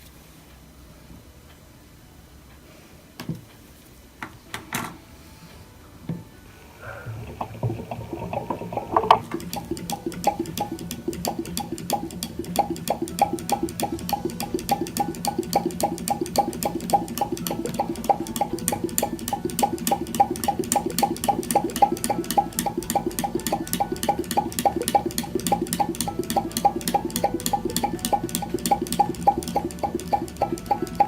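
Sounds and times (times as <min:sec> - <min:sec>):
model engine clicking: 0:07.2 - 0:31.0.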